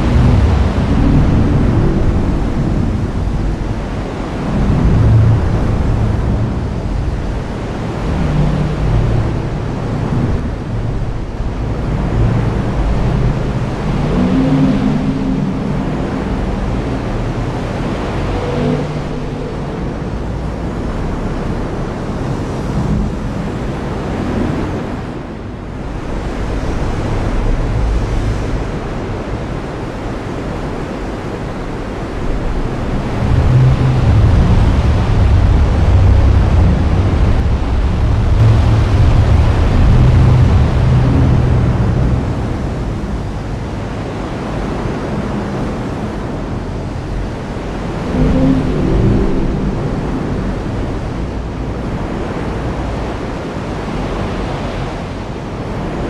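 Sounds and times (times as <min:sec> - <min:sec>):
low thunder rumbles: 0:00.0 - 0:21.2, 0:31.7 - 0:52.8
heavy rain pouring: 0:00.0 - 0:21.9, 0:25.8 - 0:54.7.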